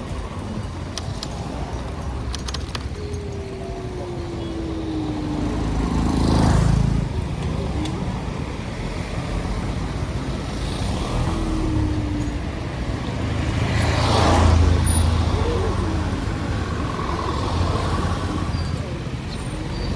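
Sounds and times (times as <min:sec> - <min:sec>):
car engines and tyres rumbling: 0:00.0 - 0:19.9
vehicle passing: 0:00.0 - 0:19.9.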